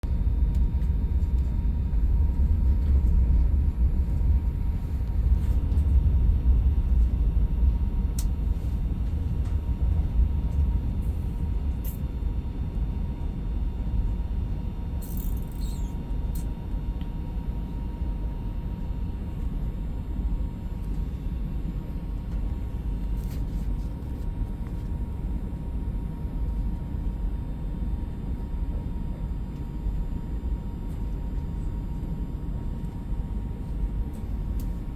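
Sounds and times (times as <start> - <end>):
train rumbling: 0.1 - 12.0.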